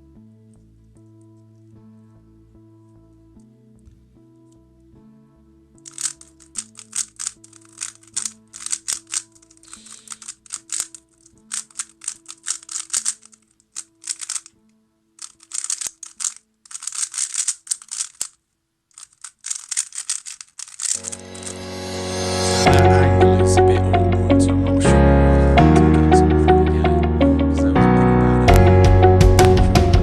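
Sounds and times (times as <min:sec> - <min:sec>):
soft background music: 0:00.0 - 0:16.6, 0:21.0 - 0:30.0
puzzle cube plastic clicking: 0:05.8 - 0:14.6, 0:15.2 - 0:21.6.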